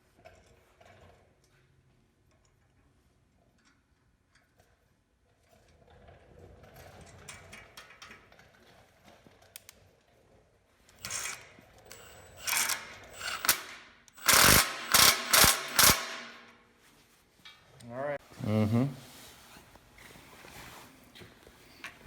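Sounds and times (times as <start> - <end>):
sharp mechanical tool bursts: 11.0 - 16.4.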